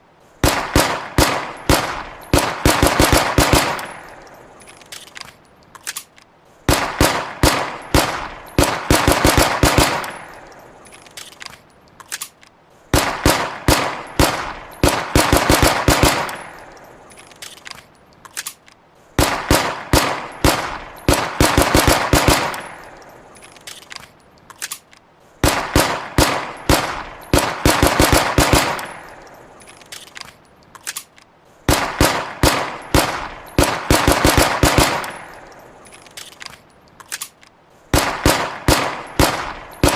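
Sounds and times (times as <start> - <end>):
rapid pistol shots with echo: 0.4 - 4.7, 6.7 - 11.2, 12.9 - 17.4, 19.2 - 23.0, 25.4 - 29.7, 31.7 - 36.2, 37.9 - 39.9.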